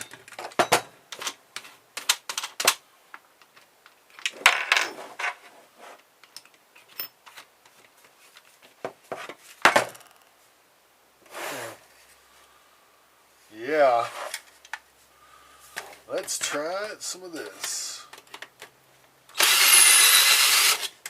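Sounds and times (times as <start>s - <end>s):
metal parts and tools clattering: 0.0s - 2.8s, 4.1s - 5.4s.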